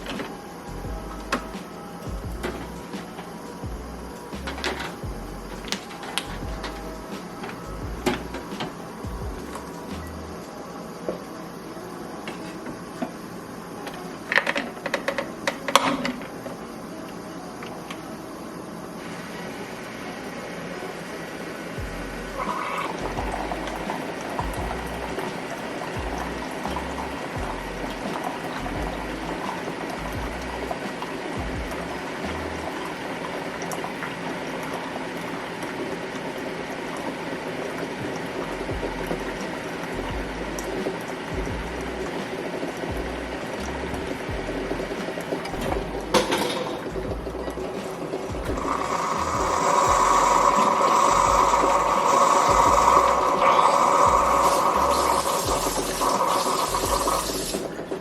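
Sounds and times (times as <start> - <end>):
steady low hum: 0.0 - 12.2, 21.8 - 33.4, 38.0 - 53.3
liquid boiling: 0.0 - 58.0.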